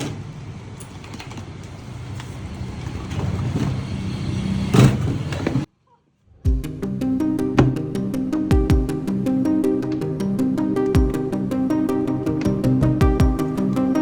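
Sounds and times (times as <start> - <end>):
music: 6.4 - 14.0.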